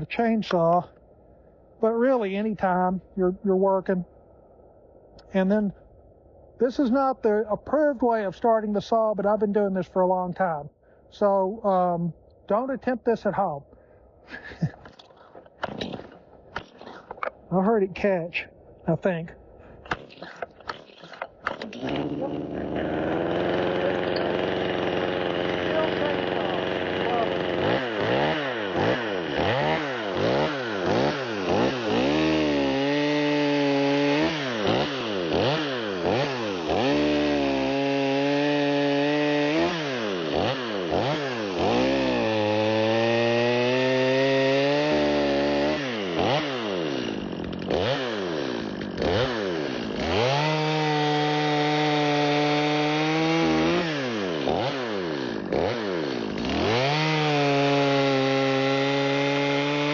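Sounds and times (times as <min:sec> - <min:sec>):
chainsaw revving: 0:14.5 - 0:17.3, 0:19.9 - 0:59.9.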